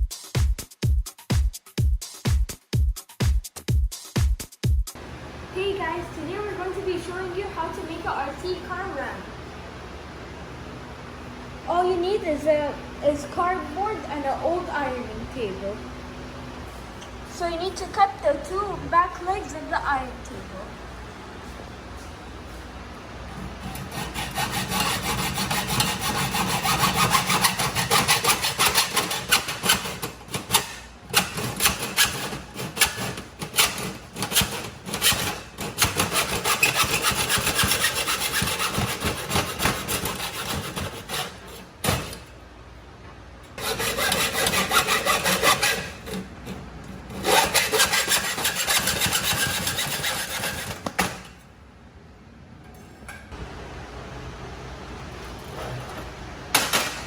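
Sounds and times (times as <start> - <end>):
saw rasping through metal: 23.3 - 42.3, 43.6 - 51.4.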